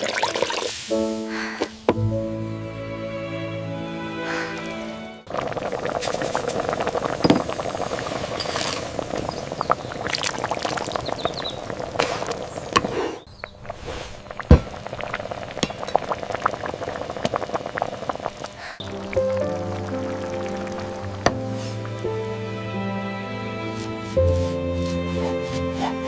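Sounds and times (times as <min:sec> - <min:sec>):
liquid boiling in pot: 0:00.0 - 0:00.8, 0:05.3 - 0:22.0.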